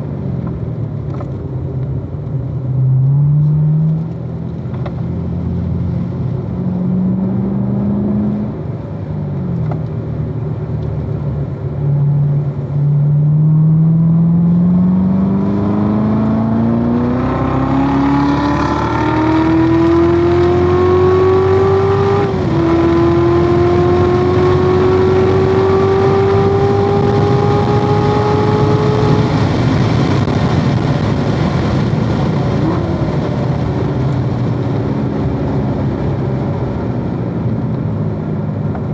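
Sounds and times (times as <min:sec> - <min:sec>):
car engine accelerating hard: 0:00.0 - 0:38.9
wind noise: 0:15.0 - 0:38.9.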